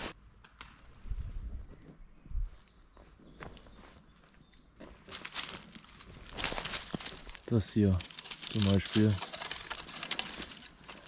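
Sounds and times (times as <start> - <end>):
footsteps on forest floor: 2.4 - 11.0.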